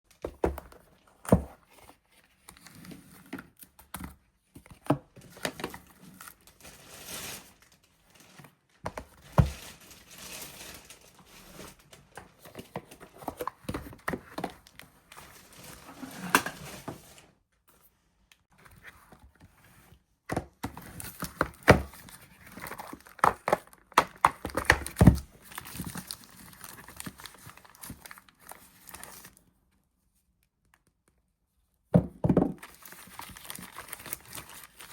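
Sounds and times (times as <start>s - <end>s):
packaging crinkling and tearing: 5.2s - 16.4s, 20.8s - 29.4s, 32.6s - 34.9s.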